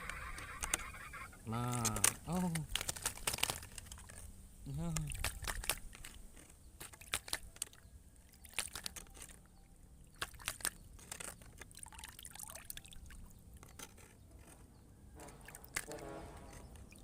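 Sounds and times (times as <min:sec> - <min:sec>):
sharp clicks: 0:00.0 - 0:01.0, 0:01.6 - 0:04.2, 0:04.9 - 0:07.8
water trickling and dripping: 0:07.0 - 0:14.0
water splashes: 0:10.0 - 0:13.3.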